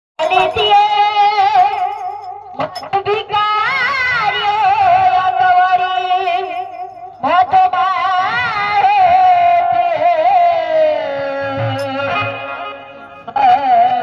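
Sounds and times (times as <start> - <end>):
woman singing: 0.2 - 14.0.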